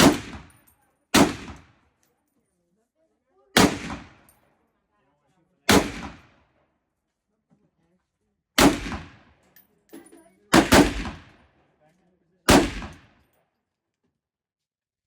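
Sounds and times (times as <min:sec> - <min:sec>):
rifle shots: 0:00.0 - 0:01.8, 0:03.6 - 0:04.3, 0:05.7 - 0:06.4, 0:08.6 - 0:09.3, 0:10.5 - 0:11.4, 0:12.5 - 0:13.2.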